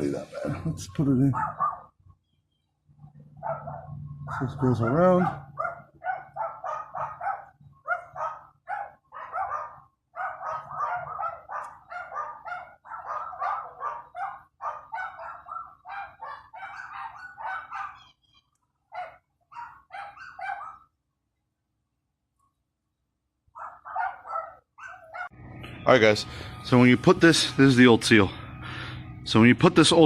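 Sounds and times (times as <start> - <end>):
dog barking rapidly: 1.3 - 2.0, 3.4 - 18.2, 18.9 - 20.9, 23.6 - 25.4.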